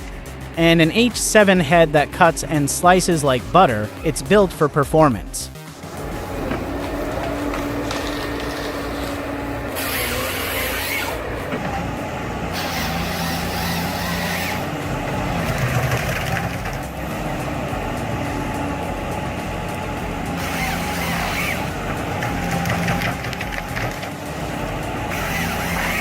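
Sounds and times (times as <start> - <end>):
harvester engine and hydraulics: 0.0 - 26.0
loud hissing: 5.8 - 26.0.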